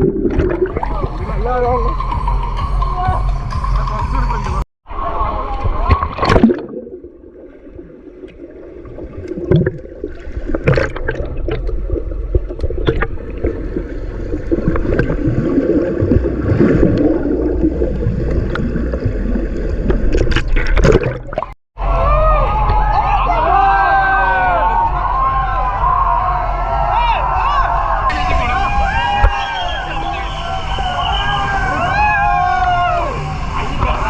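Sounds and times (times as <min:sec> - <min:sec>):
water splashes: 0:00.0 - 0:01.7, 0:05.3 - 0:21.6
water gurgling and sloshing: 0:00.0 - 0:02.2, 0:05.5 - 0:21.6.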